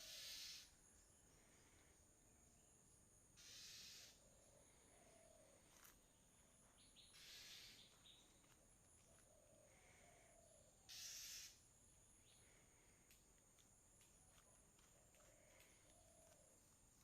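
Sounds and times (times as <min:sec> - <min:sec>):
high-pitched insect trill: 0:00.0 - 0:01.2, 0:02.5 - 0:04.3, 0:06.6 - 0:08.6, 0:10.6 - 0:12.4
short hissing bursts: 0:10.9 - 0:11.6.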